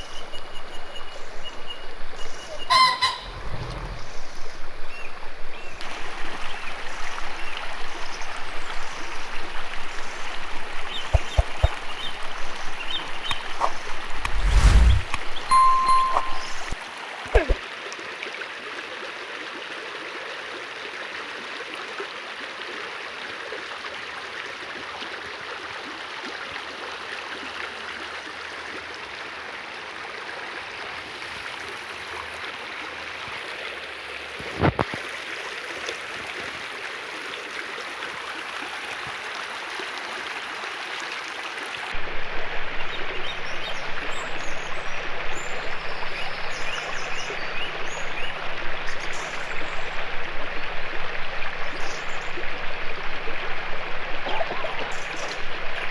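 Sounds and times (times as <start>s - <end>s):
water rushing: 3.1s - 17.9s
low hum: 14.1s - 16.8s.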